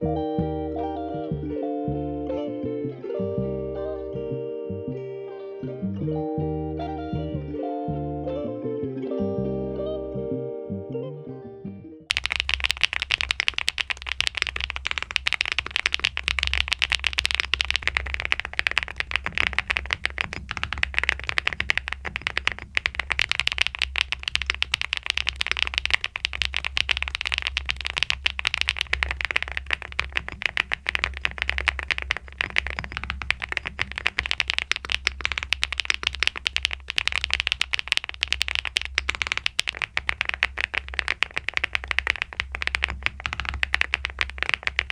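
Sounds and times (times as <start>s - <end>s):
mechanical keyboard typing: 12.1s - 44.9s.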